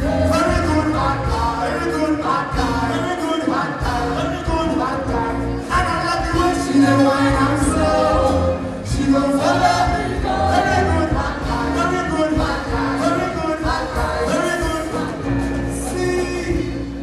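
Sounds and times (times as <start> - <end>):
band with bass and drums: 0.0 - 17.0
voices singing: 0.0 - 17.0.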